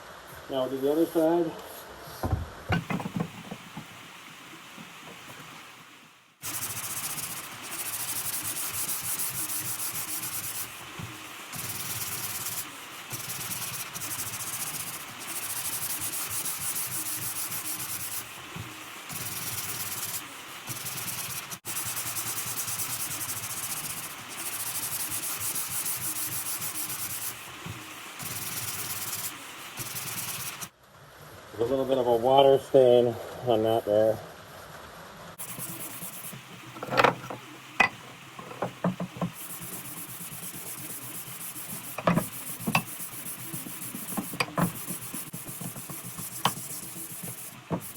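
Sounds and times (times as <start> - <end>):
sandpaper rubbing on wood: 6.4 - 30.7, 35.4 - 37.4, 38.4 - 47.9.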